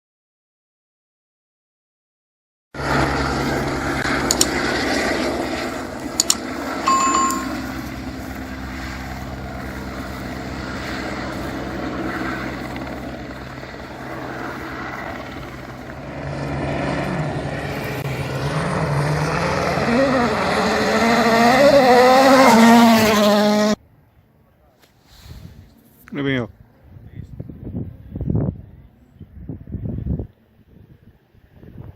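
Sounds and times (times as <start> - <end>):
low engine hum: 2.8 - 23.8
sharp clicks: 4.3 - 4.5, 6.2 - 6.4
short beep: 6.9 - 7.7
rally car engine revving: 17.0 - 23.8.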